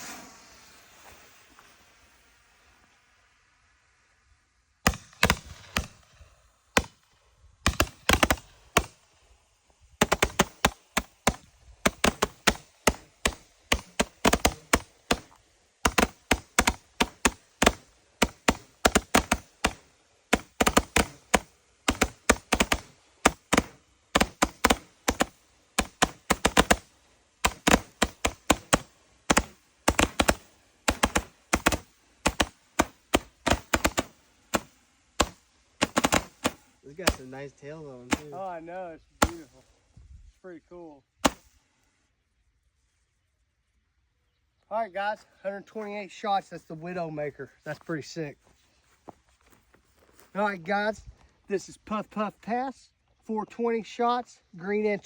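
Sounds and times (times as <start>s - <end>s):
firework cake shots: 10.0s - 38.5s, 39.2s - 39.6s, 41.2s - 41.6s.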